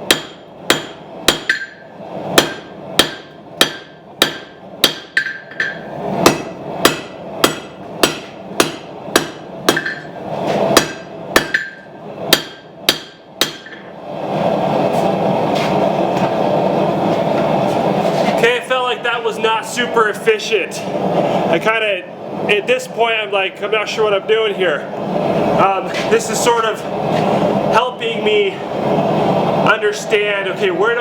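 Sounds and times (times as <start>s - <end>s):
hammer striking steel on anvil: 0.0s - 13.9s
steady rushing noise: 0.0s - 31.0s.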